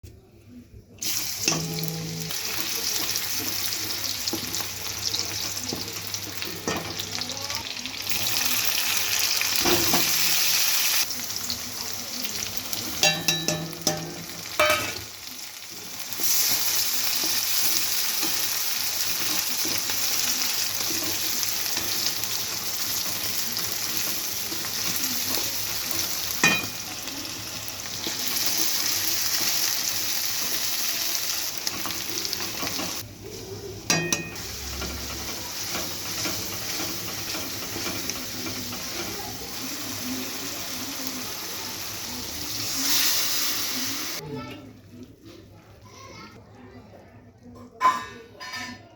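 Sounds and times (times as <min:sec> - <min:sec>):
vegetables sizzling in hot oil: 0:01.0 - 0:44.2
spoon clinking against pan: 0:13.0 - 0:15.1, 0:26.4 - 0:26.9, 0:33.9 - 0:39.1
utensil stirring: 0:16.2 - 0:41.1.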